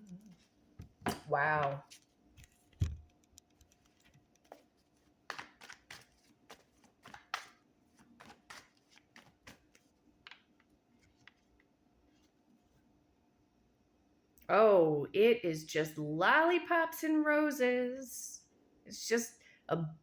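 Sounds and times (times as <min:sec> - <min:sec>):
cards shuffling: 0:01.1 - 0:11.6.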